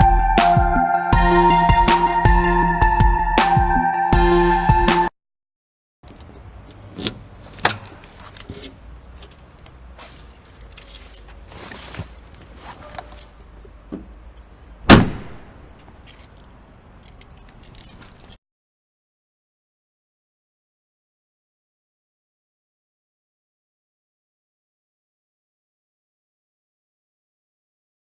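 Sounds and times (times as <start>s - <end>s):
rustling and handling of lid: 7.4s - 14.1s.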